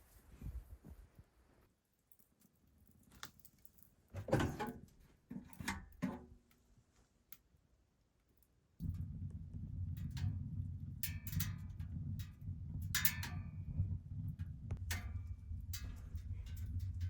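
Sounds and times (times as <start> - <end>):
steady low rumble: 8.8 - 17.0.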